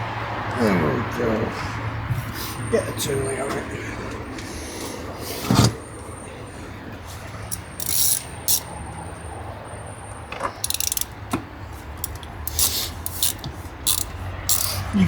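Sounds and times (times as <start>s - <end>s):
ratchet pawl clicks: 7.5s - 8.7s, 10.6s - 11.2s, 12.0s - 14.9s.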